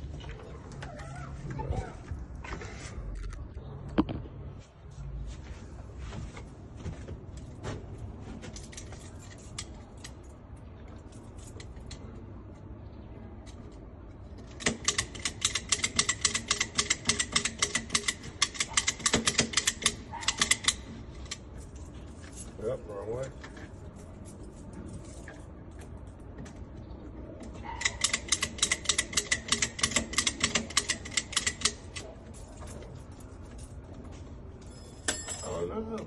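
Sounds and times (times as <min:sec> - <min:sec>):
rapid ringing metal clicks: 0:14.6 - 0:21.4, 0:27.6 - 0:32.1
lock pick metallic clicks: 0:27.8 - 0:32.0.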